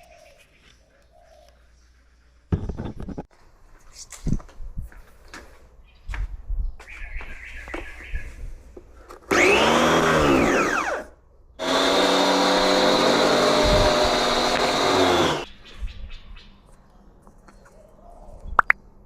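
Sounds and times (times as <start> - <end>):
pressure washer motor running: 9.3 - 11.0, 11.6 - 15.4.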